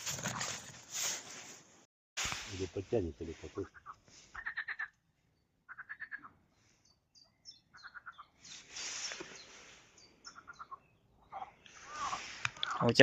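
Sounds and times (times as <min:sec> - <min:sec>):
frogs croaking: 0:03.6 - 0:06.7, 0:07.4 - 0:08.5, 0:09.9 - 0:13.0
high chirping calls: 0:03.7 - 0:13.0.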